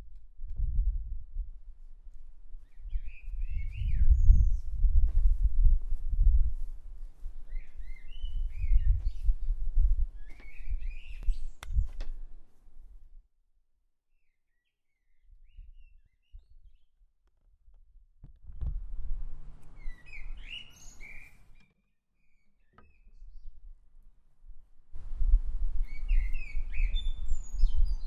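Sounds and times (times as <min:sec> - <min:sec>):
birds chirping and singing: 0:02.6 - 0:04.7, 0:07.5 - 0:09.6, 0:10.2 - 0:11.9, 0:19.7 - 0:23.6, 0:25.8 - 0:28.0.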